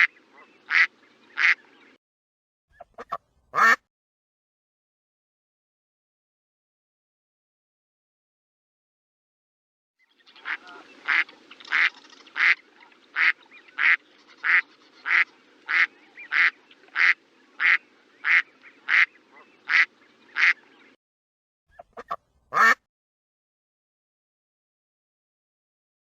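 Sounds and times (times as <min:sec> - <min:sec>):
duck quacking: 0:00.0 - 0:01.6, 0:02.8 - 0:03.8, 0:10.4 - 0:12.6, 0:13.2 - 0:20.6, 0:21.7 - 0:22.8.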